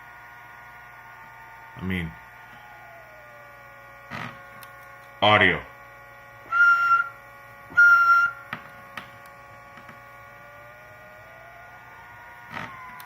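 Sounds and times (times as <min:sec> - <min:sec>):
radio buzzing whine: 0:00.0 - 0:13.0
steady electrical hum: 0:00.0 - 0:13.0
rising whistle: 0:06.4 - 0:08.5, 0:12.7 - 0:13.0.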